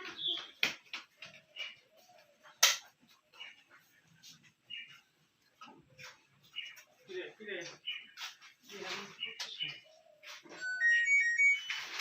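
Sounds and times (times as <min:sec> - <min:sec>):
washing machine beeping melody: 0:10.5 - 0:12.0.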